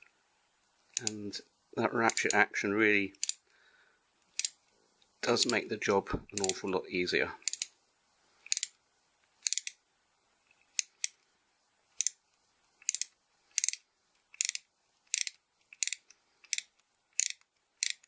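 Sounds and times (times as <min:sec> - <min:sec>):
ratchet tap wrench clicking: 0:03.2 - 0:03.4, 0:07.4 - 0:07.7, 0:08.4 - 0:08.7, 0:09.4 - 0:09.8, 0:12.8 - 0:18.0.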